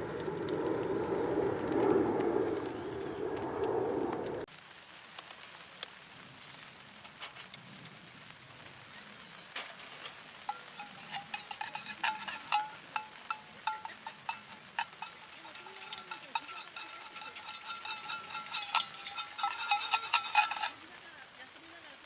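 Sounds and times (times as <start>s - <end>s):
metal utensil clinking on pot: 9.8s - 21.0s.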